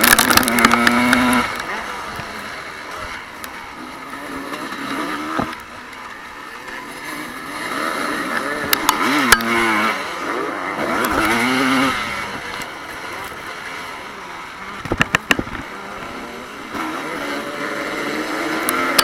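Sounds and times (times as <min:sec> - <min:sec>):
sharp clicks: 0:00.0 - 0:02.4
motocross bike engines revving: 0:00.0 - 0:19.0.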